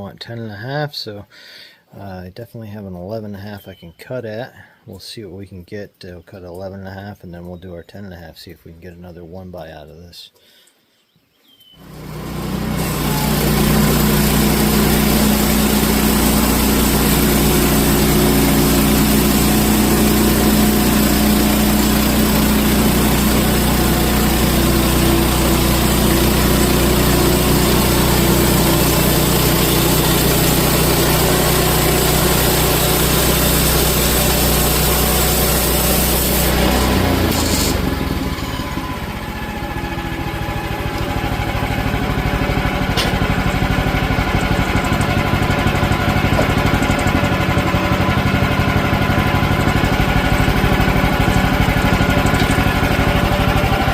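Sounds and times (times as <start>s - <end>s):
sawmill engine running: 11.8s - 53.9s
band blade cutting log hiss: 25.1s - 37.9s.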